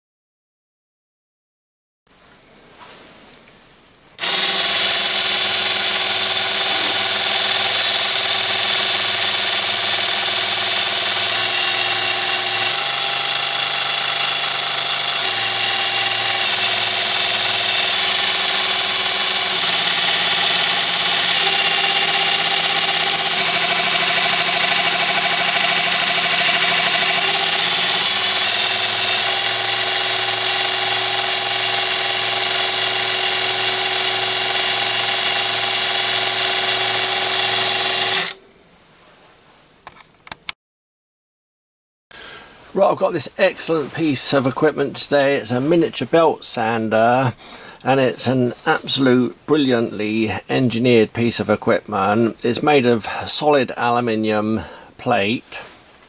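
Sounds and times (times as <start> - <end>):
belt sander running: 4.2 - 38.4.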